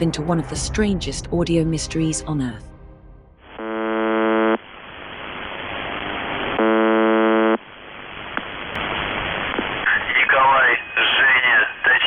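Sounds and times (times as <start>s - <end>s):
harsh buzz tone: 3.3s - 7.8s
radio static hiss: 3.4s - 12.0s.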